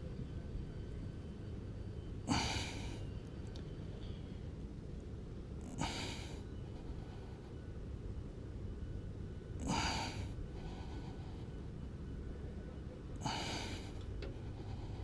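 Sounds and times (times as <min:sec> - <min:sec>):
man breathing hard: 0:02.2 - 0:03.1, 0:05.6 - 0:07.8, 0:09.6 - 0:11.8, 0:13.2 - 0:15.0.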